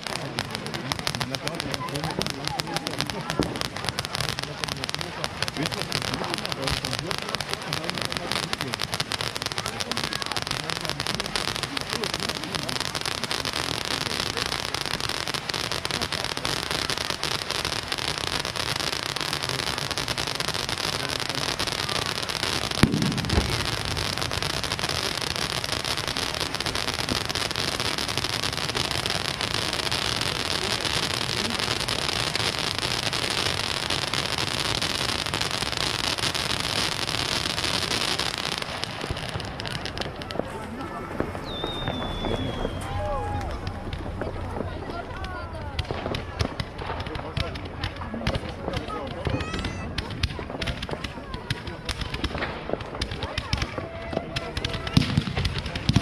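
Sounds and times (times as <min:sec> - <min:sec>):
firecrackers crackling: 0:00.0 - 0:56.0
loud bang: 0:39.1 - 0:47.2.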